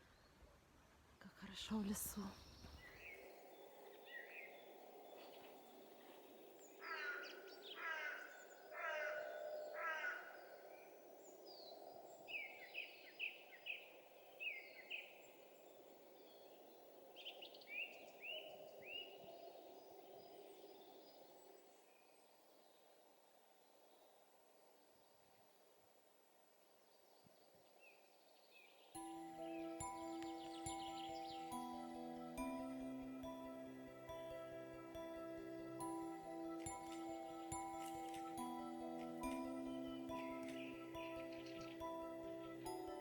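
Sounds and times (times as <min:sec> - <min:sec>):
harsh bird calls: 0:06.6 - 0:10.9.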